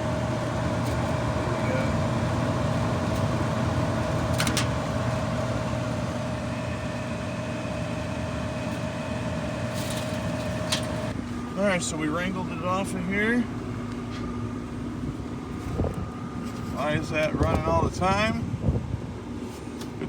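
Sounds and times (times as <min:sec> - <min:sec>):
furnace motor whining: 0:00.0 - 0:11.9.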